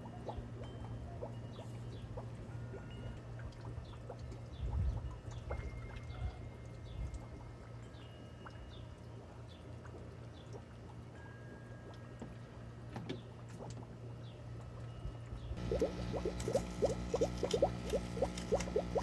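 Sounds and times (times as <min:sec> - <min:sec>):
water trickling and splashing: 0:00.0 - 0:11.2, 0:15.6 - 0:19.0
steady low hum: 0:14.0 - 0:19.0.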